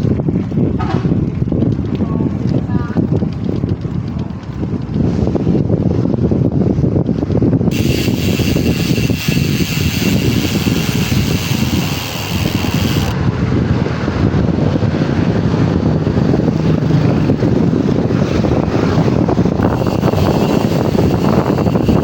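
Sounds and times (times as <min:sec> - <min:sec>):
wind rumble on microphone: 0:00.0 - 0:22.0
bicycle freehub buzzing: 0:07.6 - 0:22.0.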